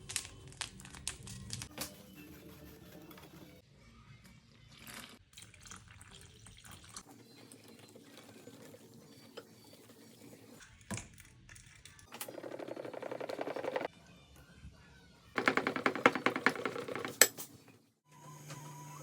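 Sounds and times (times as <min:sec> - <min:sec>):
liquid splashing and pouring: 0:04.8 - 0:07.1.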